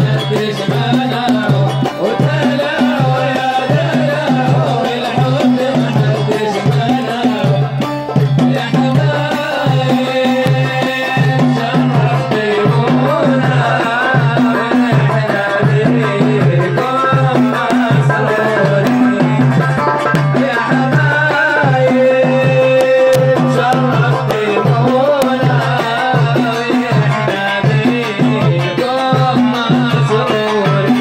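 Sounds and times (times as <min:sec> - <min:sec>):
hand drum rhythm: 0:00.0 - 0:31.0.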